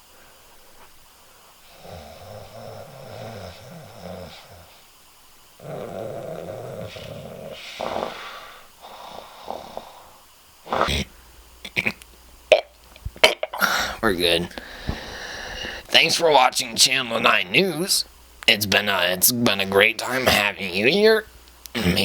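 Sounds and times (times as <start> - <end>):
person making rasping snore noises: 1.7 - 4.8, 5.6 - 11.1, 21.7 - 22.0.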